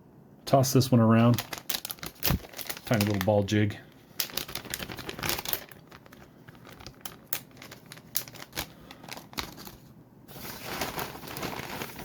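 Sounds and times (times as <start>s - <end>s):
plastic bag crinkling: 1.2s - 12.0s.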